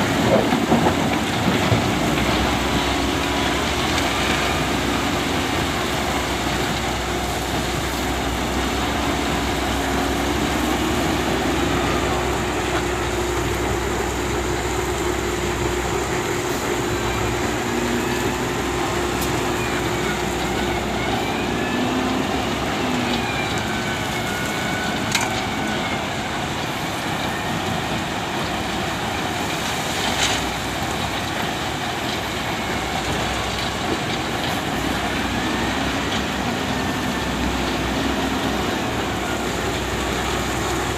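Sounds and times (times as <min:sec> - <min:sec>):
whining hydraulic tones: 0:00.0 - 0:29.1
excavator engine and hydraulics: 0:00.0 - 0:40.9.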